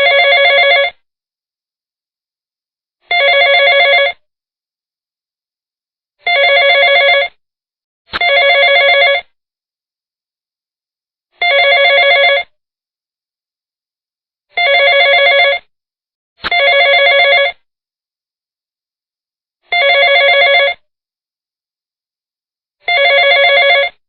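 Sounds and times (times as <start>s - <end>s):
telephone ringing: 0.0s - 1.0s, 3.1s - 4.2s, 6.2s - 7.4s, 8.2s - 9.3s, 11.4s - 12.5s, 14.6s - 15.7s, 16.5s - 17.7s, 19.7s - 20.8s, 22.9s - 24.0s.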